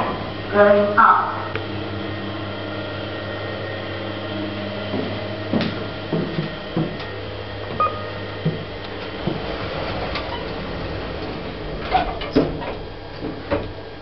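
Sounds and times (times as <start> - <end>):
electrical hum of lift: 0.0 - 14.0
irregular clunks and knocks: 11.8 - 13.8.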